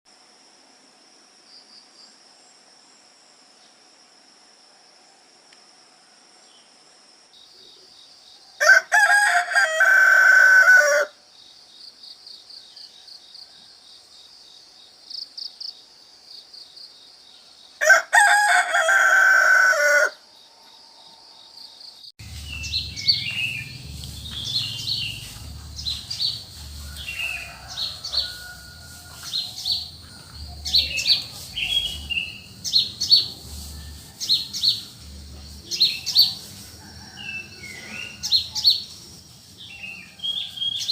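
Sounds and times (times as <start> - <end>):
high insect trill: 0.1 - 40.9
rooster crowing: 8.6 - 11.2, 17.8 - 20.2, 22.5 - 38.8
low rumble: 22.2 - 27.1
small birds chirping: 22.2 - 28.6, 29.2 - 33.6, 34.2 - 36.6.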